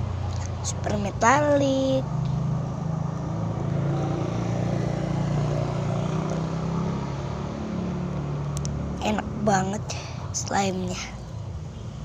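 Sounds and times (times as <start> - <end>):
low mechanical hum: 0.0 - 6.5.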